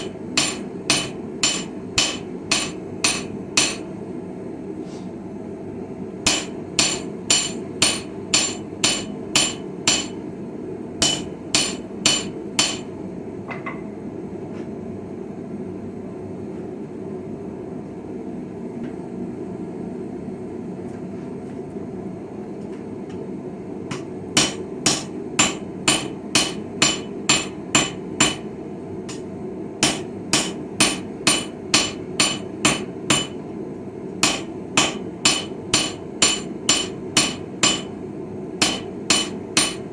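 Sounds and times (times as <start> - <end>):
hammer striking chisel on anvil: 0.0 - 3.9, 6.3 - 10.2, 11.0 - 13.8, 23.9 - 28.5, 29.1 - 33.4, 34.2 - 38.0, 38.6 - 39.9.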